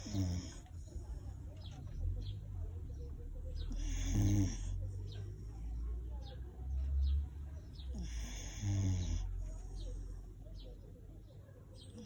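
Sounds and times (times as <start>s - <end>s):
dog snoring: 0.0s - 0.7s, 3.7s - 4.8s, 7.9s - 9.4s.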